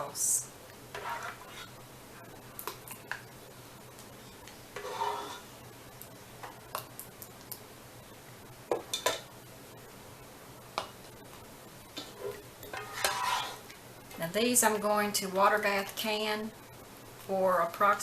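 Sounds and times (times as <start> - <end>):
utensil scraping glass jar: 12.8 - 13.6.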